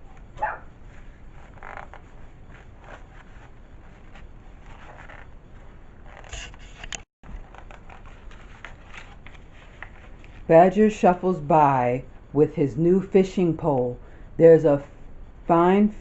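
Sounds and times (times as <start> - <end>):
paper pages rustling and turning: 0.8 - 10.8.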